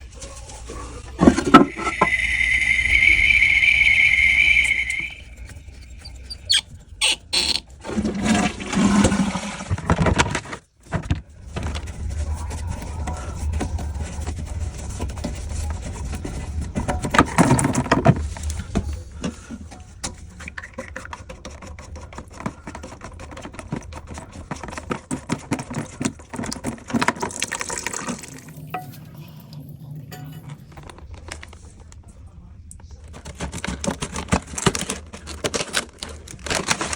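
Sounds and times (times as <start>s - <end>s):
water splashing in toilet tank: 0.0s - 5.5s, 7.8s - 10.4s, 20.1s - 30.6s
plastic parts clicking and knocking: 9.8s - 11.9s, 16.1s - 27.4s, 32.7s - 36.9s.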